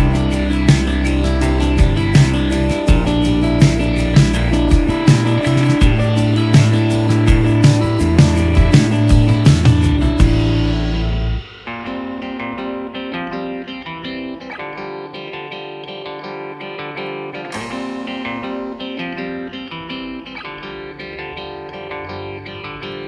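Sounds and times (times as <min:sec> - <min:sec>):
plucked string notes: 0:00.0 - 0:15.3.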